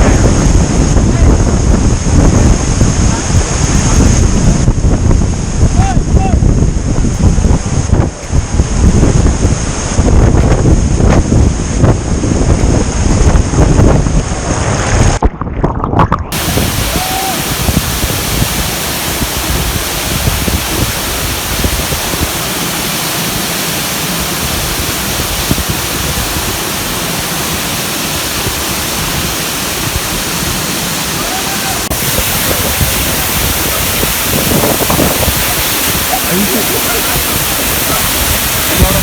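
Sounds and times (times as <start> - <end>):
waterfall rushing: 0.0 - 6.6, 16.3 - 39.0
wind buffeting microphone: 0.0 - 39.0.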